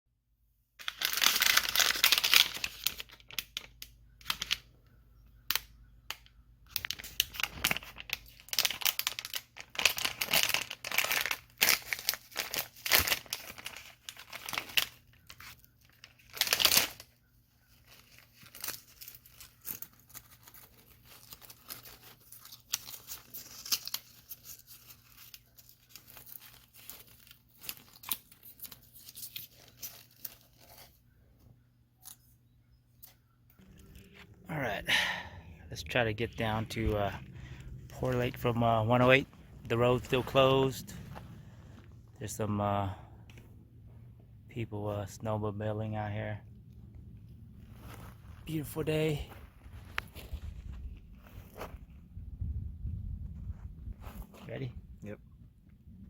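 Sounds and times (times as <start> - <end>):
rustling and crinkling: 5.5 - 42.4, 46.8 - 52.2, 52.9 - 55.0
faint low hum: 11.3 - 56.0.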